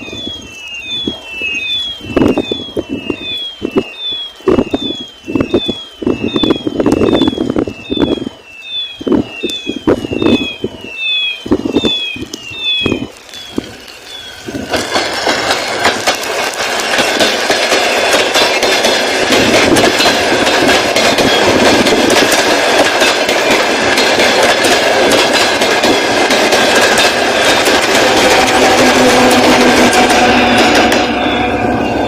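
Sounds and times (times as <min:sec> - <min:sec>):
train wheels clattering on rails: 0:13.0 - 0:32.0.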